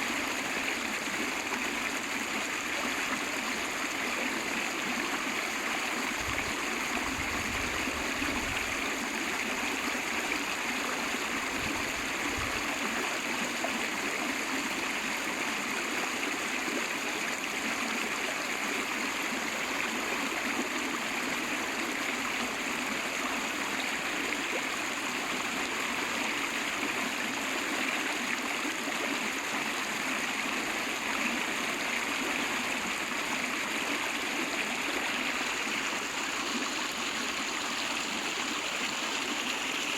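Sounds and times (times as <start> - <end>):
river water rushing: 17.4 - 39.9.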